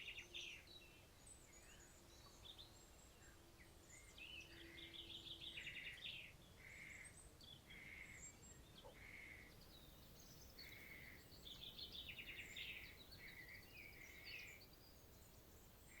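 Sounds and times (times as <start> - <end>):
soft steady hiss: 0.0 - 16.0.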